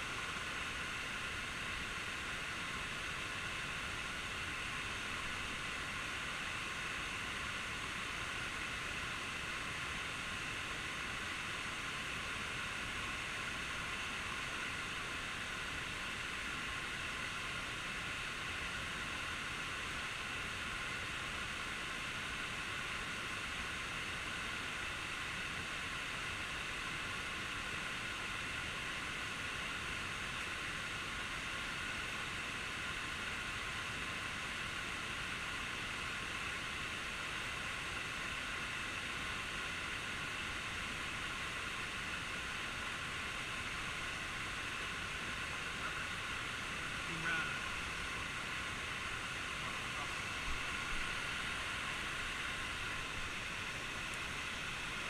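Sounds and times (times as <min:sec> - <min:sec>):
waterfall rushing: 0:43.1 - 0:55.0.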